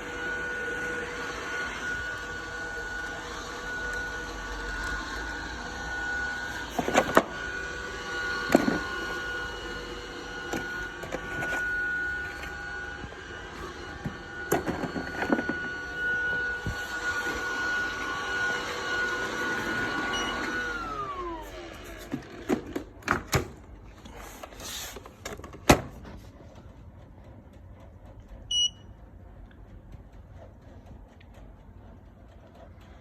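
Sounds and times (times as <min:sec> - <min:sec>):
vacuum cleaner whine: 0:00.0 - 0:26.3.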